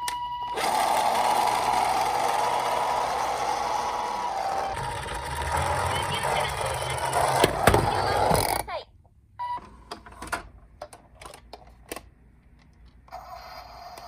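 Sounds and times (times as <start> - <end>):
plastic toys rolling and rattling: 0.6 - 8.6.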